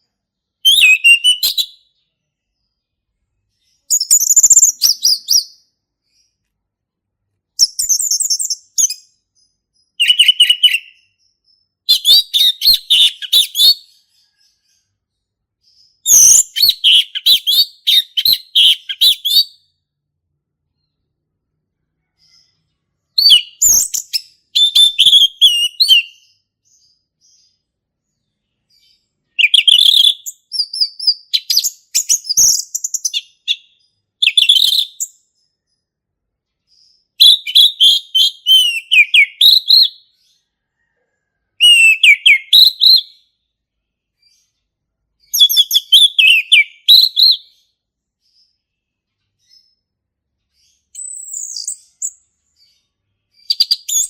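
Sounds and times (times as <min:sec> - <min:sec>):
thrush singing whistled phrases: 0:00.6 - 0:01.9, 0:03.9 - 0:05.6, 0:09.9 - 0:11.1, 0:11.9 - 0:14.0, 0:16.0 - 0:19.7, 0:23.2 - 0:26.2, 0:29.4 - 0:35.2, 0:37.2 - 0:40.0, 0:41.6 - 0:43.2, 0:45.3 - 0:47.6, 0:53.4 - 0:54.0.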